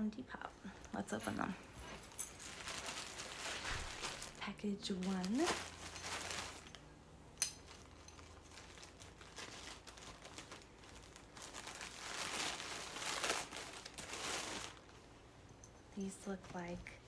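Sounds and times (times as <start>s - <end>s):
packaging crinkling and rustling: 1.4s - 15.2s.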